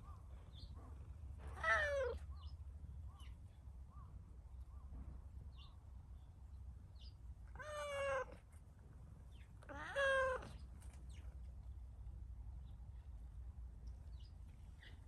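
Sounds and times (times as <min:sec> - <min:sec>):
cat meowing: 0:01.5 - 0:02.2, 0:07.5 - 0:08.4, 0:09.6 - 0:10.6.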